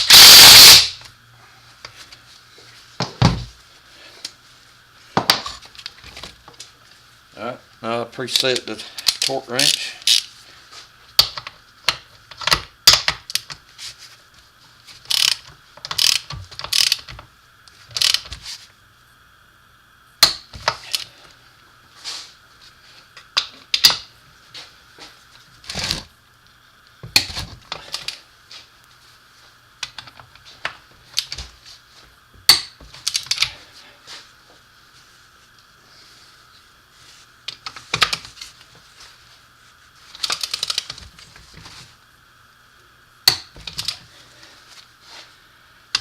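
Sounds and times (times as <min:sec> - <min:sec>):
torque wrench clicking: 0:00.0 - 0:01.0, 0:08.3 - 0:10.3, 0:15.1 - 0:17.1, 0:17.9 - 0:18.3, 0:40.2 - 0:41.0
faint steady hum: 0:00.0 - 0:46.0.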